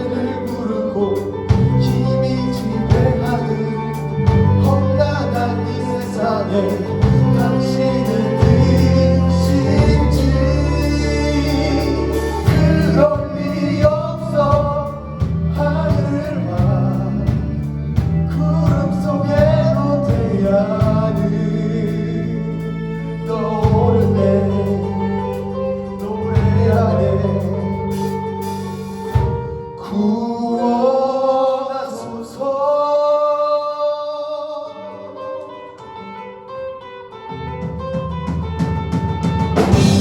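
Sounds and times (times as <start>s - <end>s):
voices singing: 0.0s - 28.1s
long held bass notes: 0.0s - 30.7s, 37.4s - 40.0s
instrumental backing: 0.0s - 31.1s, 34.5s - 40.0s.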